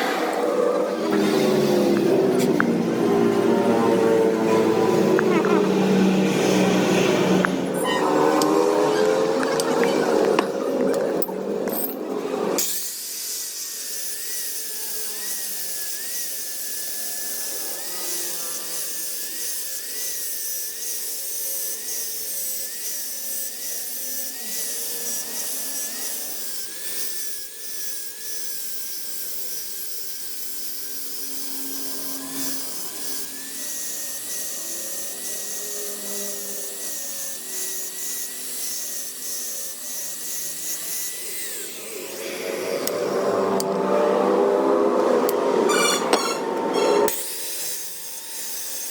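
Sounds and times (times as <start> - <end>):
power tool whining: 0.0 - 48.9.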